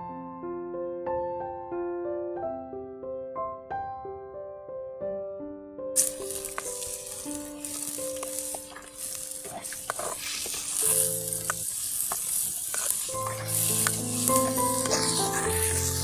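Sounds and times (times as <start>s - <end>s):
food sizzling in a pan: 6.0s - 16.0s
utensil clicking against pot: 6.0s - 16.0s.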